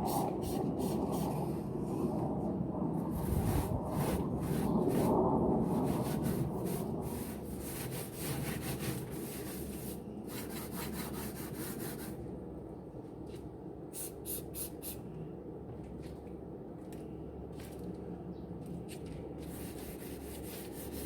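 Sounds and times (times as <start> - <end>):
scrubbing a barbecue grill: 5.8 - 12.1, 19.4 - 21.0.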